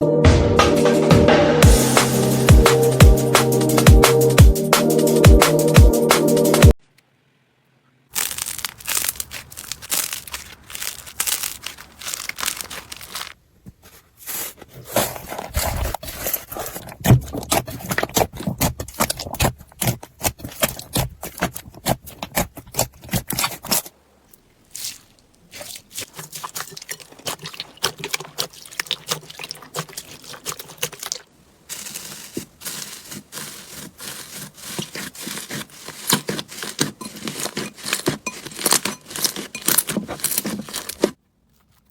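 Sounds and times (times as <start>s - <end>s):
slime crackling and popping: 8.2s - 13.4s.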